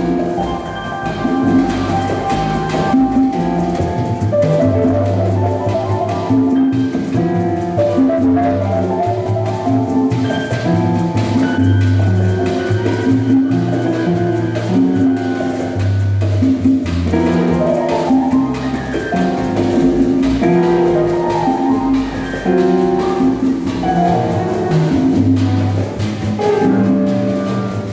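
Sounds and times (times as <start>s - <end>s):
low bass notes: 0.0s - 27.9s
percussion striking: 0.0s - 27.9s
piano: 0.0s - 27.9s.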